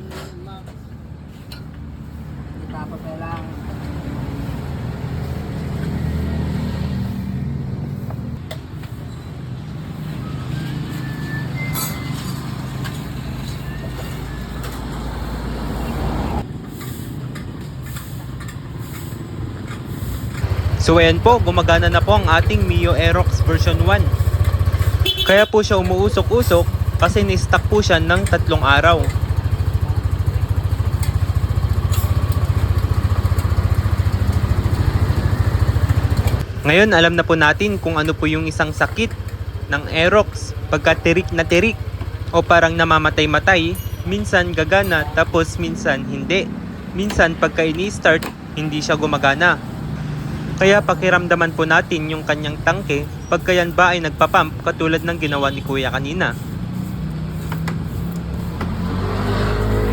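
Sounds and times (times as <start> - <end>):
brief high tone: 11.0 - 12.4
scooter engine running: 12.0 - 59.9.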